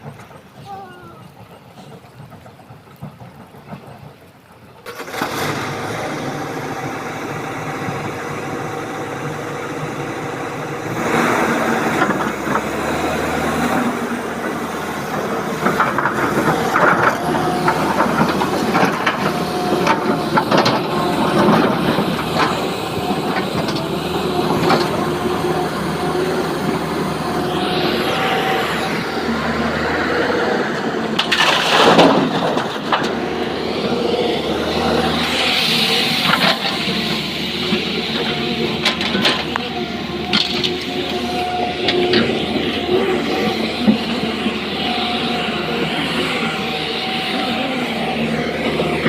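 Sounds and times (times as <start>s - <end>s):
diesel excavator engine: 0.0s - 49.0s
metal clanks and knocks: 37.7s - 42.8s.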